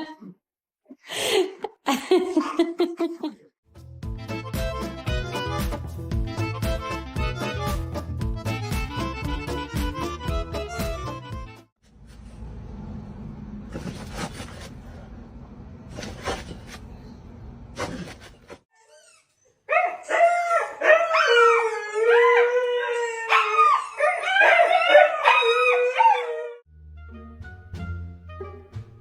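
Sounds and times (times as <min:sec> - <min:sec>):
dog howling: 0:20.0 - 0:26.6.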